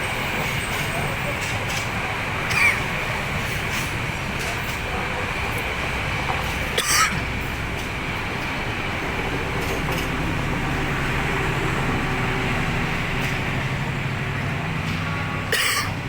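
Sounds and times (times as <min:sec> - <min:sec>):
vehicle engine humming: 0:06.2 - 0:16.0.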